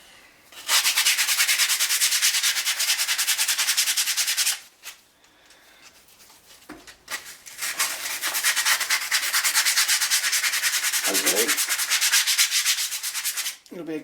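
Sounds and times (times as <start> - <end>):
sanding rasping strokes: 7.6 - 13.6.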